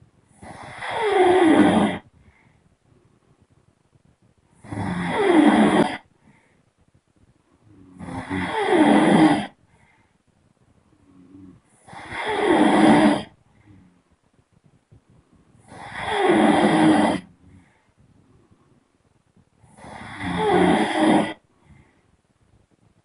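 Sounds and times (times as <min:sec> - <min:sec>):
quiet breathing: 0:00.0 - 0:23.0
person snoring: 0:00.4 - 0:02.0, 0:04.6 - 0:06.1, 0:07.6 - 0:09.6, 0:11.0 - 0:14.0, 0:15.6 - 0:17.7, 0:19.6 - 0:21.4.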